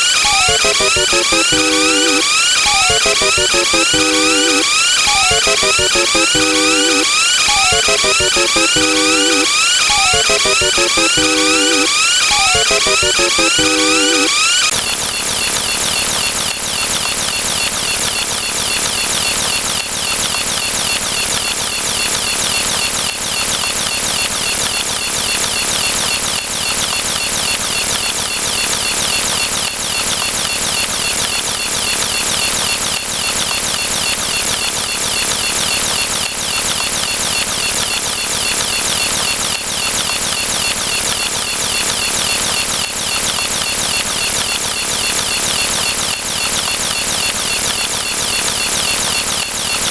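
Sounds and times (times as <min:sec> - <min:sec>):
dense electronic sound effects: 0:00.0 - 0:14.7.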